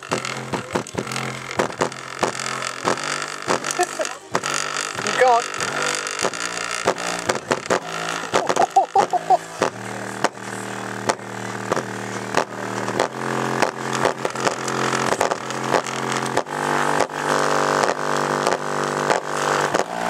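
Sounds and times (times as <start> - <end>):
speaker crackling clicks: 0.0 - 10.4, 11.0 - 19.9
distorted droning bass tone: 0.0 - 20.0
high squeaks: 0.0 - 20.0.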